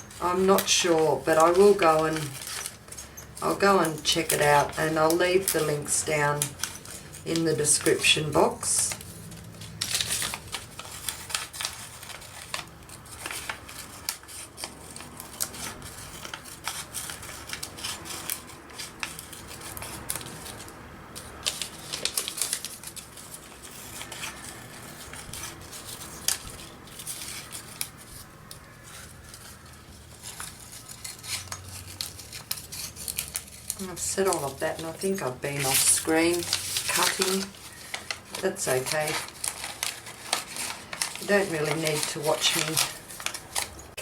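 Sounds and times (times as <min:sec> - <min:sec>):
scissors snipping paper: 0:00.0 - 0:44.0.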